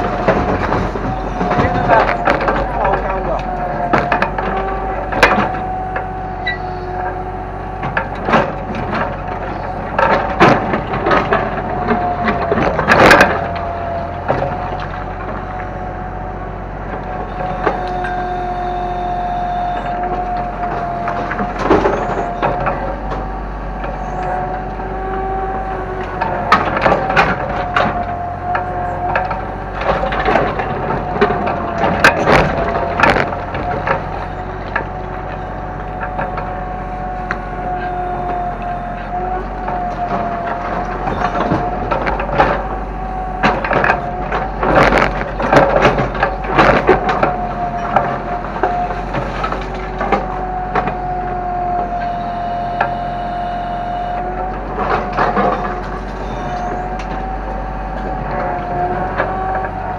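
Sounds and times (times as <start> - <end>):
excavator engine whining: 0.0 - 59.9
debris cracking and crunching: 17.0 - 59.9.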